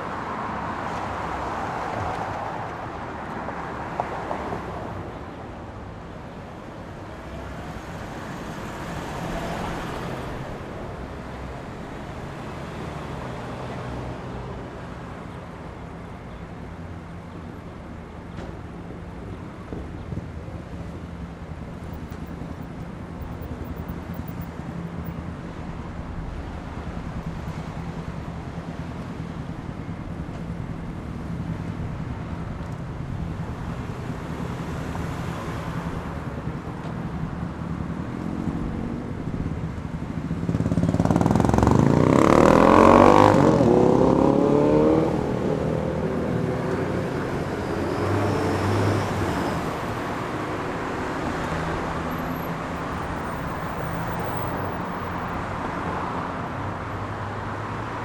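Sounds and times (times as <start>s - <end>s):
traffic rumble: 0.0s - 58.0s
vehicle accelerating nearby: 40.5s - 55.4s.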